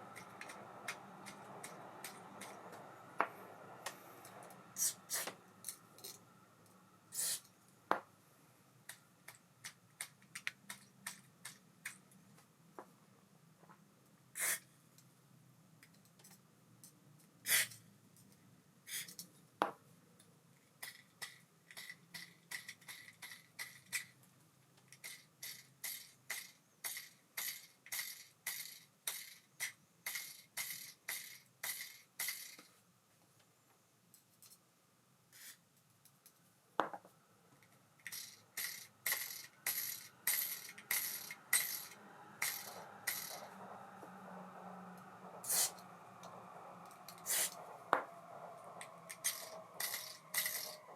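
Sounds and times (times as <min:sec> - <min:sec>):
fishing reel metal clicks: 0:38.0 - 0:43.5
fishing reel ticking: 0:38.1 - 0:43.5, 0:49.2 - 0:50.8.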